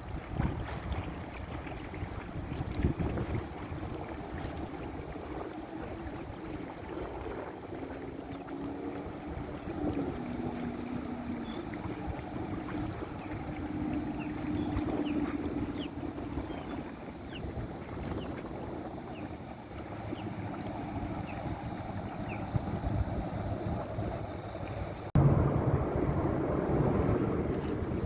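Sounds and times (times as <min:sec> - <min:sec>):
water along boat hull: 0:00.0 - 0:28.0
wind on microphone: 0:00.0 - 0:28.0.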